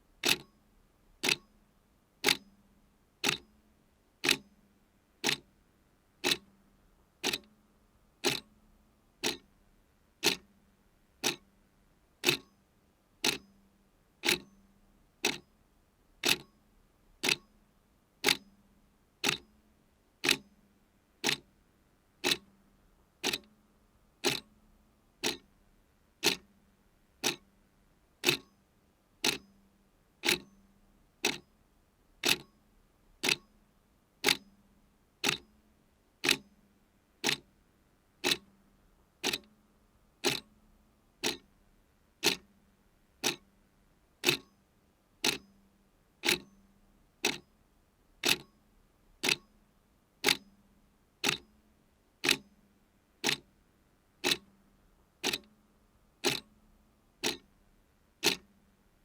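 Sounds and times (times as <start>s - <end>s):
clock ticking: 0.2s - 0.5s, 1.2s - 1.4s, 2.2s - 2.4s, 3.2s - 3.4s, 4.2s - 4.4s, 5.2s - 5.4s, 6.2s - 6.4s, 7.2s - 7.5s, 8.2s - 8.5s, 9.2s - 9.4s, 10.2s - 10.4s, 11.2s - 11.4s, 12.2s - 12.5s, 13.2s - 13.4s, 14.2s - 14.5s, 15.2s - 15.4s, 16.2s - 16.5s, 17.2s - 17.4s, 19.2s - 19.4s, 20.2s - 20.4s, 21.2s - 21.4s, 22.2s - 22.4s, 23.2s - 23.5s, 24.2s - 24.5s, 25.2s - 25.5s, 26.2s - 26.4s, 27.2s - 27.4s, 28.2s - 28.5s, 29.2s - 29.4s, 30.2s - 30.5s, 31.2s - 31.4s, 32.2s - 32.5s, 33.2s - 33.5s, 34.2s - 34.4s, 35.2s - 35.4s, 36.2s - 36.4s, 37.2s - 37.4s, 38.2s - 38.5s, 39.2s - 39.5s, 40.2s - 40.5s, 41.2s - 41.5s, 42.2s - 42.5s, 43.2s - 43.4s, 44.2s - 44.5s, 45.2s - 45.4s, 46.2s - 46.5s, 47.2s - 47.4s, 48.2s - 48.5s, 49.2s - 49.5s, 50.2s - 50.4s, 51.2s - 51.4s, 52.2s - 52.4s, 53.2s - 53.4s, 54.2s - 54.5s, 55.2s - 55.5s, 56.2s - 56.5s, 57.2s - 57.5s, 58.2s - 58.5s.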